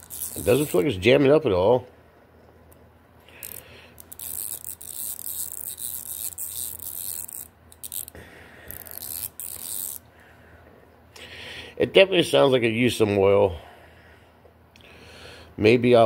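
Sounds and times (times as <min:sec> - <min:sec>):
ratchet clicking: 0:00.0 - 0:00.8, 0:03.4 - 0:10.0.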